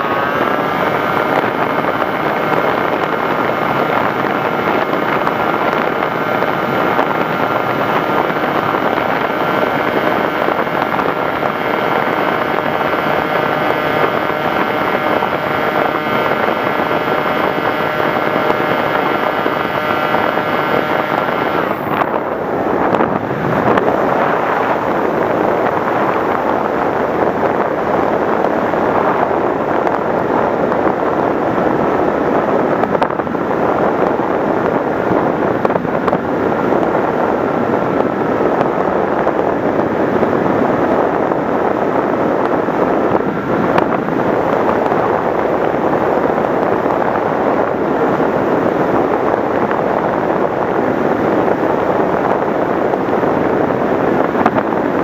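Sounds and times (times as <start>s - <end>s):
model aircraft motor whine: 0.0s - 29.3s
wind rushing past microphone: 0.0s - 55.0s.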